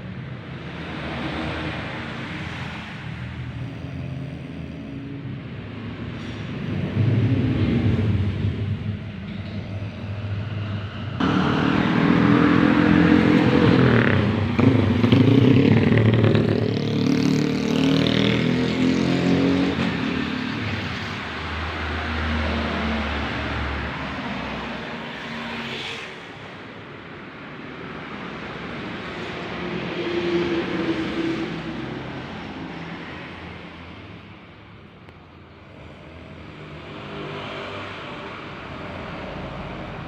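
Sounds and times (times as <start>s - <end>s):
motorcycle engine revving: 11.2s - 21.6s.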